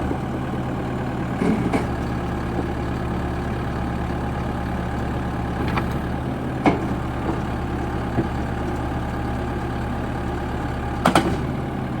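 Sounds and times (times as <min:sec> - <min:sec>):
diesel engine idling: 0:00.0 - 0:12.0
short sharp knocks: 0:11.0 - 0:11.4.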